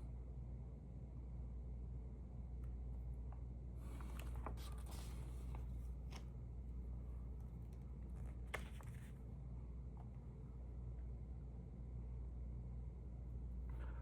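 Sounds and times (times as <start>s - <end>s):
steady low hum: 0.0s - 14.0s
paper rustling and sliding: 3.8s - 6.3s, 8.2s - 9.2s.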